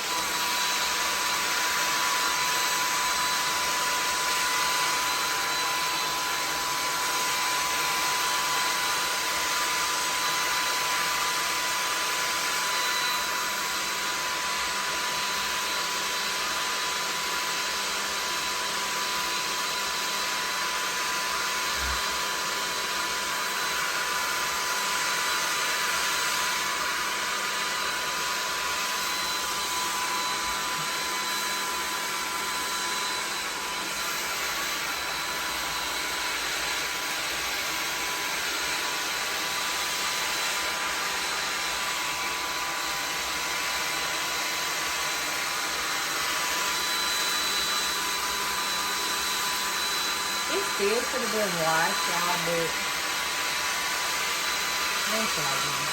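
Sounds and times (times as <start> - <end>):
hair dryer blowing: 0.0 - 55.9.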